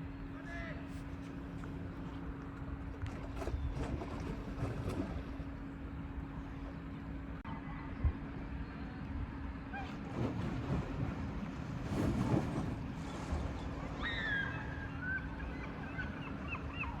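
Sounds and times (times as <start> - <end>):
low rumble with hum: 0.0 - 17.0
whistled bird call: 13.9 - 17.0.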